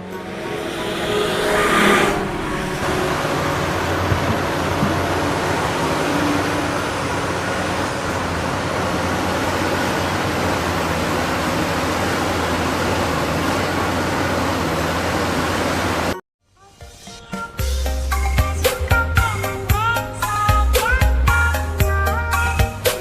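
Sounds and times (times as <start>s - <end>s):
heavy machine engine rumbling: 0.0s - 16.2s.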